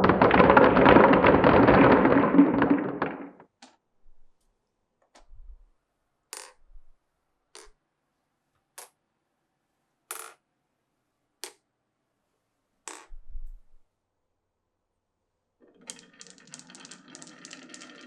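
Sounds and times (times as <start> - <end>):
marbles clacking on wood: 0.0 - 3.4, 15.7 - 18.0.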